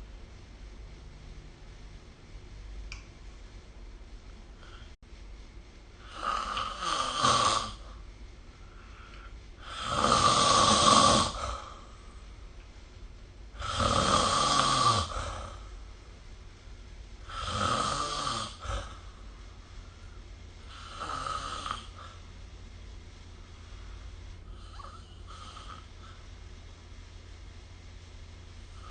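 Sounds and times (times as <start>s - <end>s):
person snoring: 6.0s - 8.0s, 8.8s - 12.0s, 13.6s - 15.7s, 17.2s - 19.1s, 20.6s - 22.2s, 24.5s - 26.2s.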